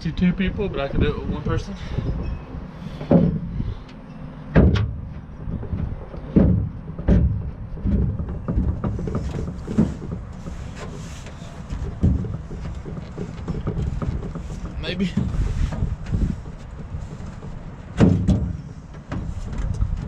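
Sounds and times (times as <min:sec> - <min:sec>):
low rumble: 0:00.0 - 0:10.6
tailgate clunks and knocks: 0:02.9 - 0:20.0.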